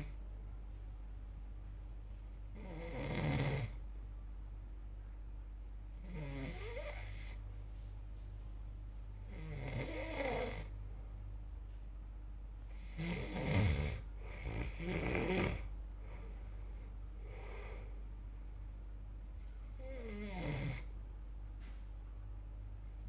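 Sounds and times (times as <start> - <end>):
person snoring: 2.6 - 3.8, 6.0 - 7.4, 9.2 - 10.7, 12.7 - 15.7, 17.2 - 17.9, 19.6 - 20.9.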